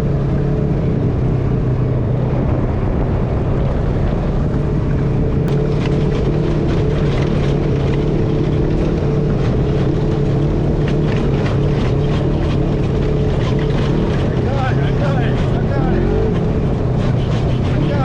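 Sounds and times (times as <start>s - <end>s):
off-road vehicle engine running: 0.0s - 18.0s
short rattles and knocks: 5.5s - 18.0s.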